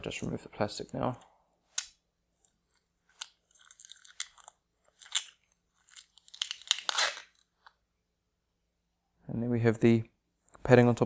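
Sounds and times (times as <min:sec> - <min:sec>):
plastic wrapping crinkling: 0:02.4 - 0:07.7.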